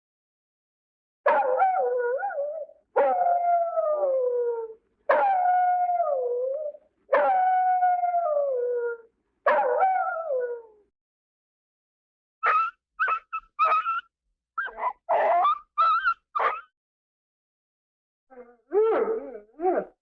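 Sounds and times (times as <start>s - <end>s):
dog howling: 1.3s - 10.8s, 14.6s - 16.6s, 18.3s - 20.0s.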